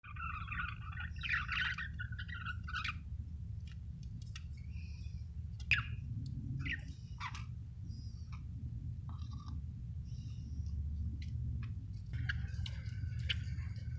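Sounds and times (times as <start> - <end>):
steady low hum: 0.0 - 13.9
budgerigar chattering and chirping: 0.1 - 3.0, 5.7 - 6.0, 6.6 - 7.5, 12.2 - 13.9.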